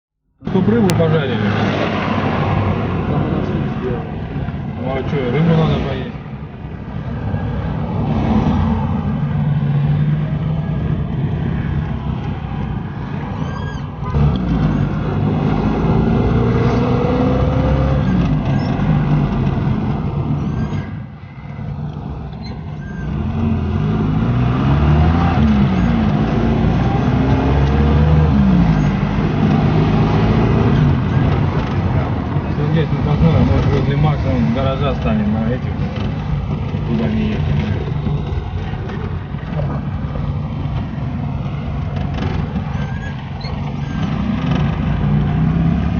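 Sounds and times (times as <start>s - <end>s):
road noise: 0.2s - 45.9s
car engine revving and shifting gear: 14.0s - 20.8s, 21.9s - 45.9s.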